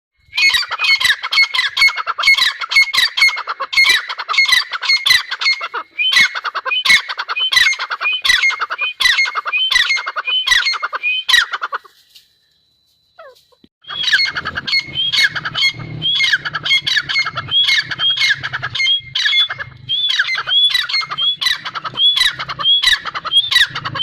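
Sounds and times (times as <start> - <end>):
francolin calling rising notes: 13.2 - 24.0.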